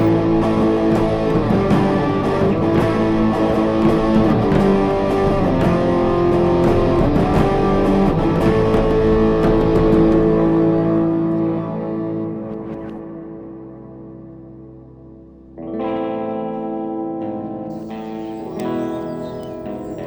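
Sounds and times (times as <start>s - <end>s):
guitar music with steady beat: 0.0s - 10.9s, 17.7s - 20.0s.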